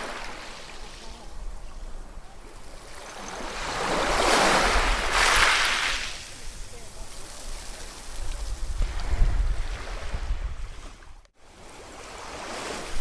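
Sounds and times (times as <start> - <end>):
ocean surf: 0.0 - 8.2, 8.9 - 13.0.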